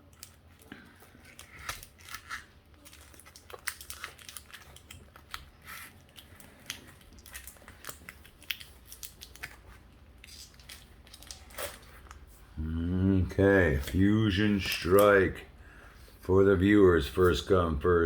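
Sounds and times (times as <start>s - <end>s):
foil wrapper crinkling: 0.0s - 12.4s, 13.7s - 15.4s.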